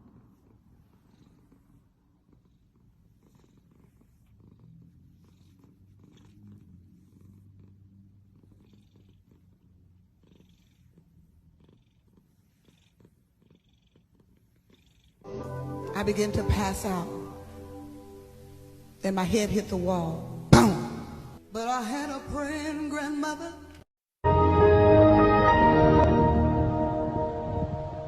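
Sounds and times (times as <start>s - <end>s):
cat purring: 0.0s - 21.5s.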